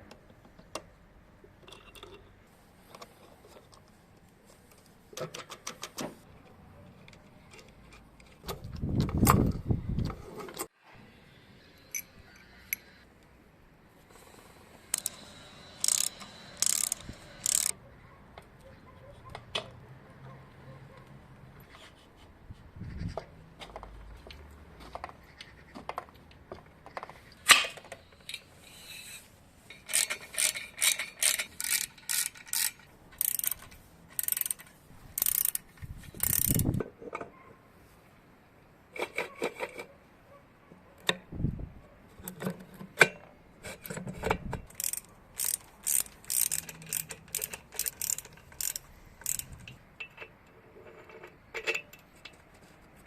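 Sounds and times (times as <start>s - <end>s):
hand tool clicking on metal: 14.9s - 17.7s, 29.7s - 36.9s, 44.7s - 50.5s.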